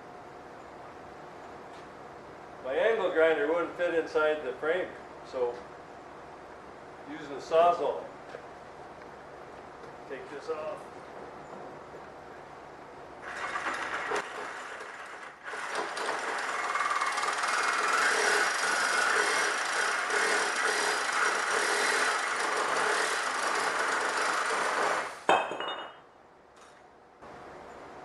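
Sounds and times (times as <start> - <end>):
reciprocating saw cutting metal: 13.2 - 25.3.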